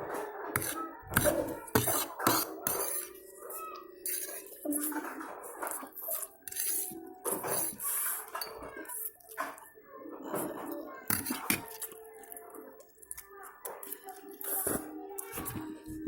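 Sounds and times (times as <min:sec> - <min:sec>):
utensils clinking on a dish: 0:00.0 - 0:16.0.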